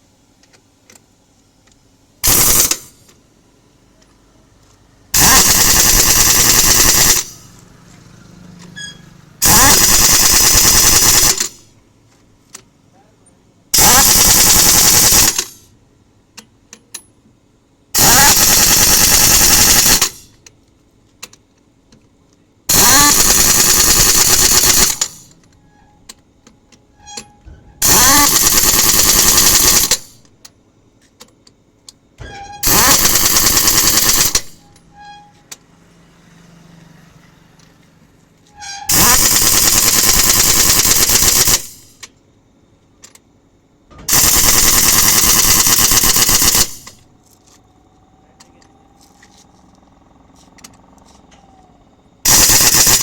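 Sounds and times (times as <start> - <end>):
pneumatic impact wrench hammering: 2.2 - 3.2, 5.1 - 7.6, 8.6 - 11.7, 13.7 - 15.7, 18.0 - 20.5, 22.7 - 26.2, 26.9 - 30.5, 32.2 - 35.6, 38.5 - 42.1, 43.9 - 47.0, 52.2 - 53.0.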